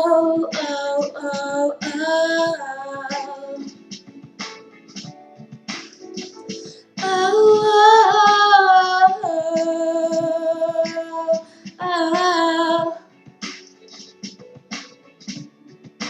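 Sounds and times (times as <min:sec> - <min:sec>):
backing music: 0:00.0 - 0:16.0.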